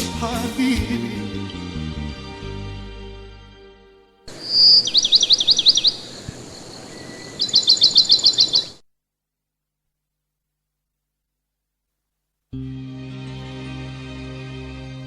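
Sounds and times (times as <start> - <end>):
songbird singing: 4.3 - 8.8.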